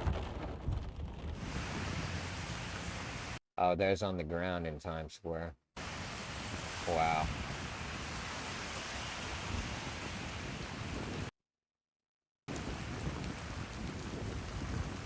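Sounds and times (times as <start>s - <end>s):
heavy rain hiss: 1.4s - 3.4s, 5.8s - 9.6s.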